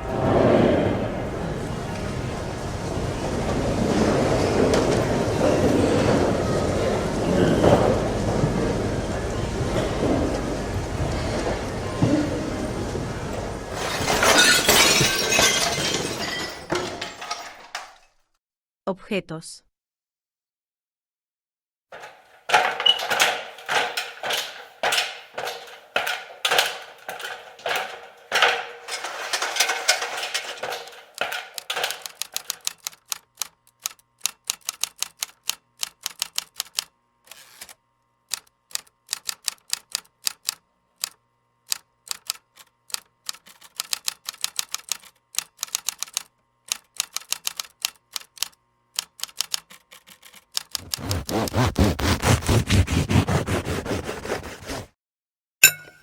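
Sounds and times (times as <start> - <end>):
typewriter keys clattering: 22.0 - 36.9, 38.3 - 52.4.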